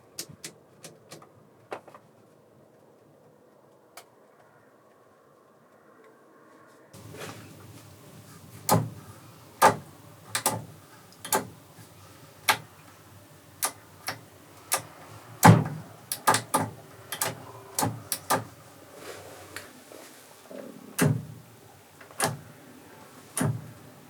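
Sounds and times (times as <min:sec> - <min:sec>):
sharp knocks and clanks: 0:07.0 - 0:12.8, 0:13.6 - 0:18.5
low steady hum: 0:07.0 - 0:24.0.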